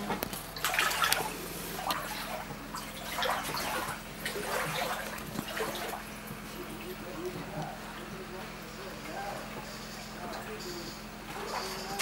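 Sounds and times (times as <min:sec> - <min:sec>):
floodwater sloshing and splashing: 0:00.0 - 0:08.1
steady low hum: 0:00.0 - 0:12.0.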